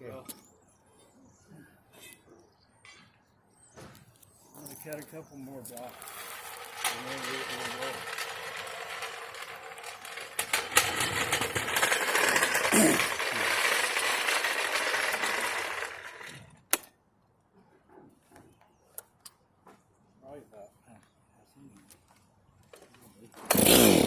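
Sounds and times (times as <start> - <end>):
chainsaw cutting wood: 6.0 - 16.4, 23.4 - 24.0.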